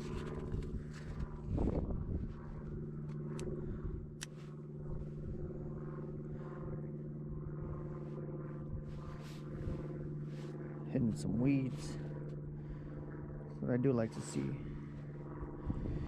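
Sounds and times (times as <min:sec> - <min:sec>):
wind buffeting microphone: 0:00.0 - 0:04.2, 0:14.7 - 0:16.0
steady mechanical hum: 0:00.0 - 0:16.0.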